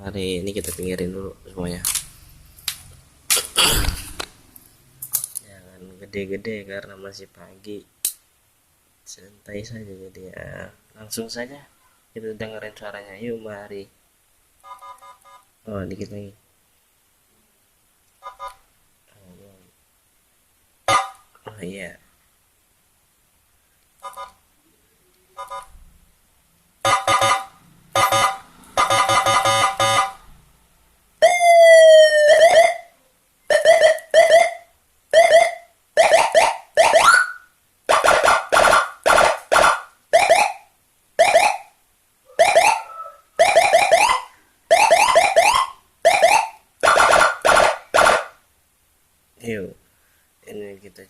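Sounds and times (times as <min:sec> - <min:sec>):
electronic siren tones: 0:25.3 - 0:25.8, 0:26.8 - 0:30.4, 0:31.2 - 0:32.9, 0:33.5 - 0:40.6, 0:41.2 - 0:41.7, 0:42.3 - 0:48.4.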